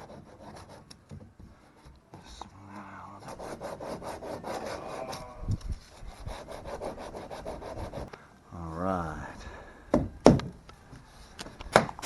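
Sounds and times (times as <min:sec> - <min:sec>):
sandpaper rubbing plastic: 0:03.1 - 0:08.1.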